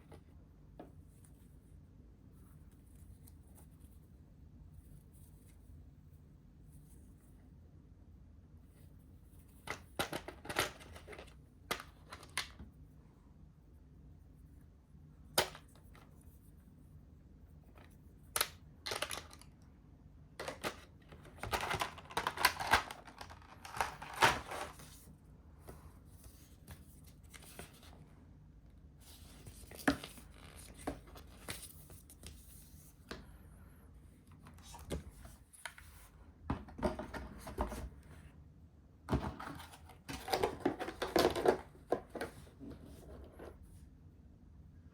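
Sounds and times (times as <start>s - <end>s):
packaging rustling and crinkling: 20.4s - 24.9s.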